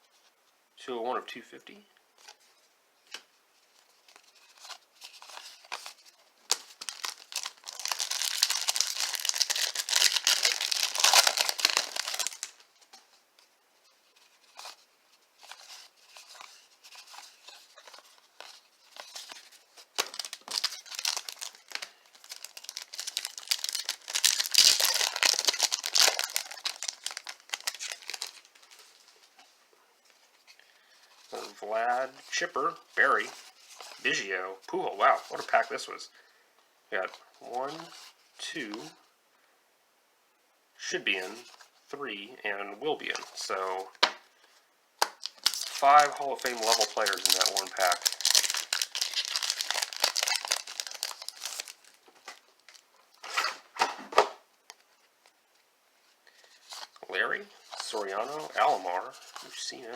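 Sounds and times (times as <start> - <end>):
cards rustling and clicking: 3.1 - 13.1, 14.2 - 29.5, 45.0 - 54.9
wrapper tearing and crinkling: 4.2 - 12.7, 15.4 - 29.1, 45.0 - 53.8.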